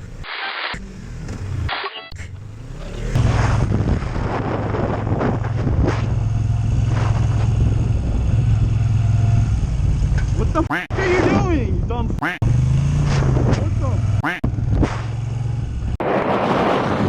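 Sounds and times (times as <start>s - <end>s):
motorcycle engine drone: 0.0s - 17.0s
wind noise: 3.2s - 12.2s, 13.0s - 15.0s, 15.7s - 17.0s.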